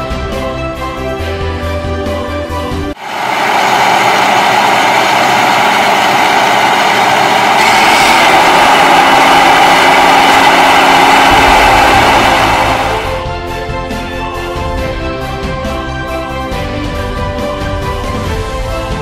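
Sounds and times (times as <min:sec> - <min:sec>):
combine harvester running: 0:03.0 - 0:18.5
deep rumble: 0:10.7 - 0:13.6.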